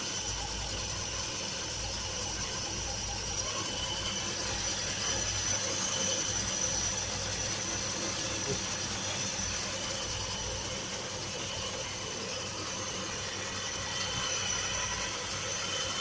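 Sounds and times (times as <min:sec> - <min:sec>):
high whine: 0:00.0 - 0:16.0
car engine idling: 0:04.2 - 0:16.0.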